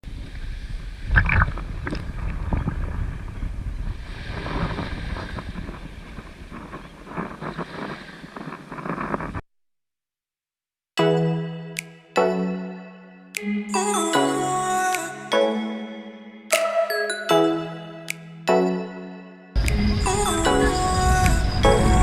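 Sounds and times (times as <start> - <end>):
wind buffeting microphone: 0.0 - 9.4, 19.6 - 22.0.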